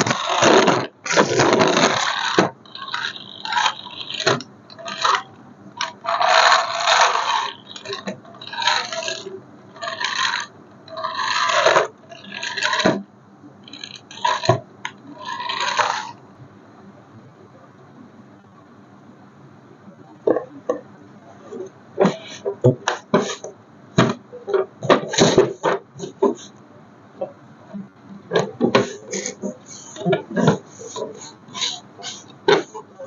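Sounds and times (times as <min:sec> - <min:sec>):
hard objects scraping and clattering: 0:00.0 - 0:13.1, 0:13.7 - 0:16.2, 0:21.5 - 0:26.6, 0:28.3 - 0:32.9.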